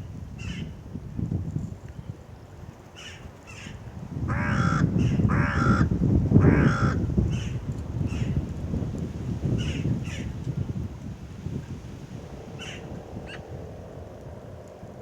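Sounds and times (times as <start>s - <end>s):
hoarse drawn-out caws: 3.0s - 8.4s, 12.6s - 13.4s
corvids calling: 12.5s - 13.5s.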